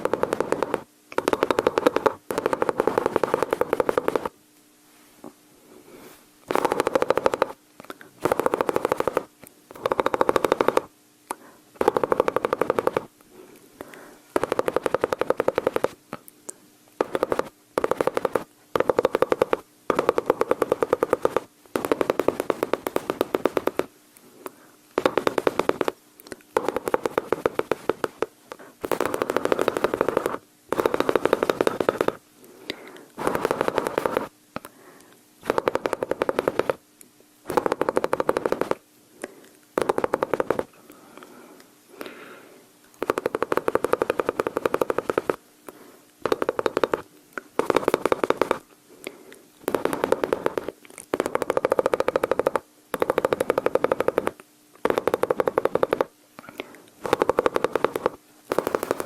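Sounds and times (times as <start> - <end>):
person imitating machine-gun fire: 0.0 - 4.3, 6.5 - 7.6, 8.2 - 13.1, 14.4 - 16.0, 17.0 - 23.9, 25.0 - 34.3, 35.4 - 36.8, 37.5 - 38.8, 39.8 - 40.7, 43.0 - 45.4, 46.2 - 48.6, 49.6 - 59.0.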